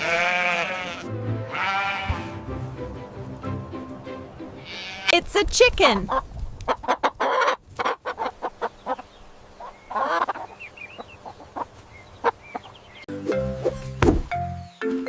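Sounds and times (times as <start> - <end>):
chicken clucking: 6.0 - 13.0
chicken squawk: 6.1 - 12.7.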